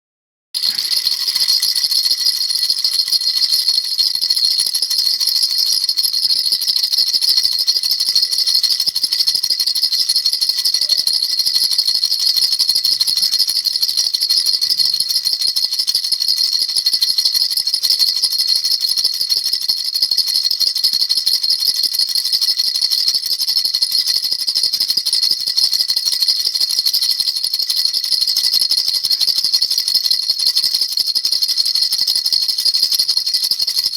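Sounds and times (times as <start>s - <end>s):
baby rattle shaken: 0.6s - 33.9s.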